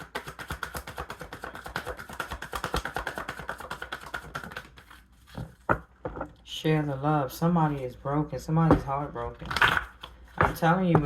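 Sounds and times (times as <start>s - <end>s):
cards being shuffled: 0.0s - 5.8s, 9.4s - 10.5s.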